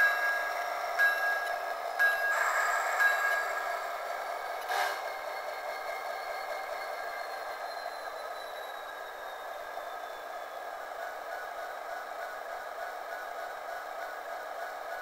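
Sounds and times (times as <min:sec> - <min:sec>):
model locomotive engine hum: 0:00.0 - 0:15.0.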